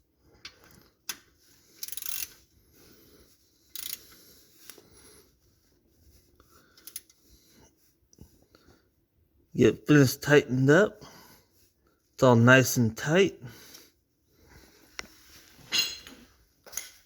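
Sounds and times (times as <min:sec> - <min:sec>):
metallic ratchet clicks: 0:01.8 - 0:02.4, 0:03.7 - 0:04.1.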